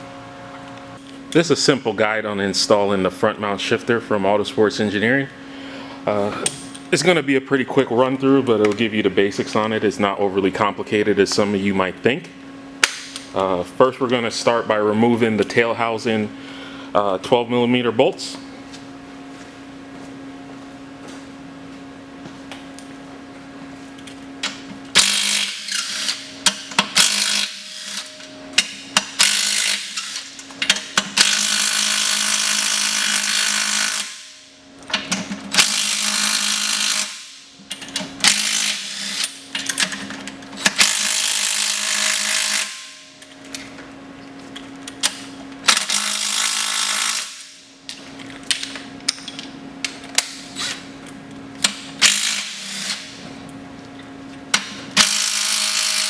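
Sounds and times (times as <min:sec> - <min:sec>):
power tool spinning out bolts: 0:24.9 - 0:26.2, 0:26.8 - 0:28.1, 0:29.1 - 0:34.2, 0:35.5 - 0:37.3, 0:52.0 - 0:53.0, 0:55.0 - 0:56.0.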